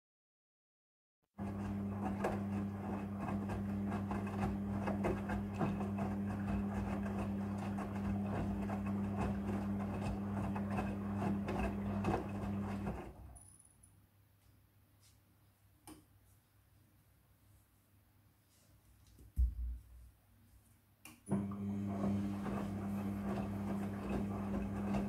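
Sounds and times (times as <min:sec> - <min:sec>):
washing machine drum humming: 0:01.4 - 0:13.2, 0:21.3 - 0:25.0.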